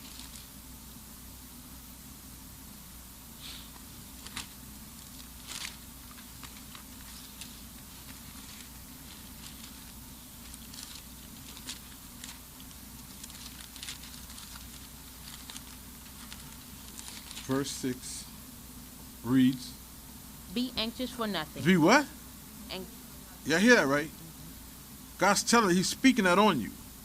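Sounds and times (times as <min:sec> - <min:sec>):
paper pages rustling: 0:00.0 - 0:00.5, 0:03.7 - 0:17.6.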